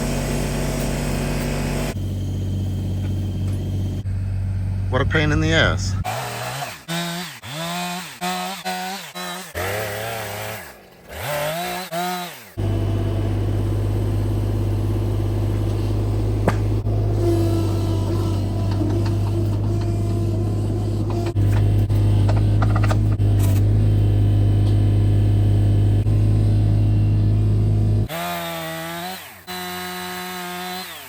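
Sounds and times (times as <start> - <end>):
engine droning: 0.0 - 6.9, 12.6 - 28.1.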